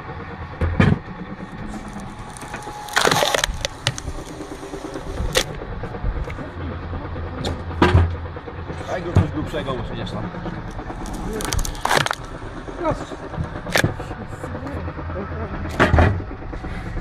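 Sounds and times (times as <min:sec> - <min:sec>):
machine humming: 0:00.0 - 0:17.0
wood cracking and splintering: 0:01.6 - 0:05.6, 0:10.7 - 0:12.4.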